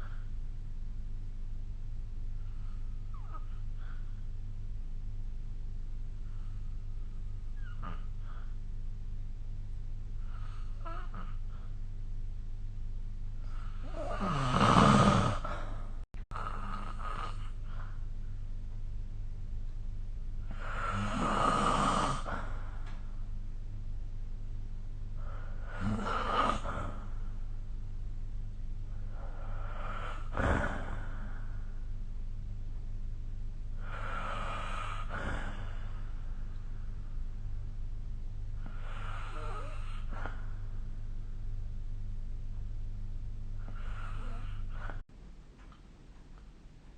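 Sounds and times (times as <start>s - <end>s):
steady low hum: 0.0s - 46.9s
person snoring: 2.4s - 4.1s, 7.6s - 8.6s, 10.2s - 11.7s, 13.4s - 18.0s, 20.4s - 23.0s, 25.2s - 27.3s, 28.9s - 31.7s, 33.8s - 36.3s, 38.6s - 40.7s, 43.6s - 45.0s.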